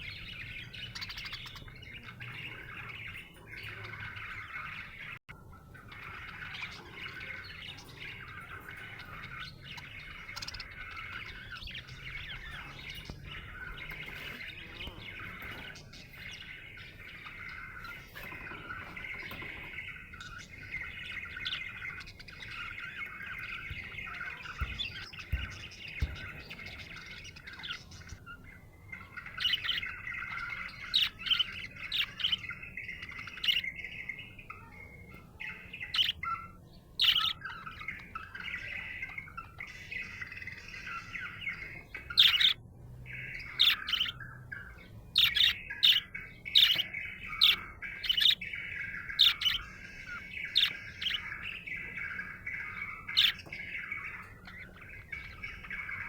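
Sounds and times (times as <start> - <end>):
budgerigar chirps: 28.9 - 56.0
budgerigar warbling: 35.4 - 56.0.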